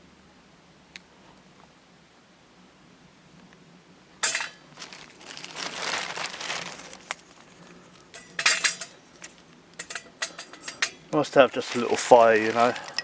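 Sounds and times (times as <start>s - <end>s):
metal stove clinking: 4.2s - 4.6s, 8.1s - 13.0s
kindling rustling: 4.2s - 13.0s.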